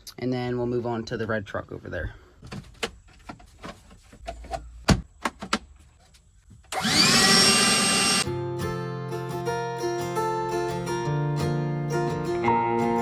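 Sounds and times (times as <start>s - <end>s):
vacuum cleaner motor whine: 6.7s - 8.2s.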